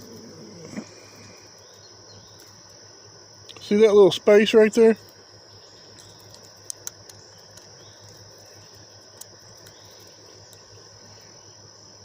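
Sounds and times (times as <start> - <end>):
crickets chirping: 0.0 - 12.0
faint clicks of small parts: 5.9 - 10.7.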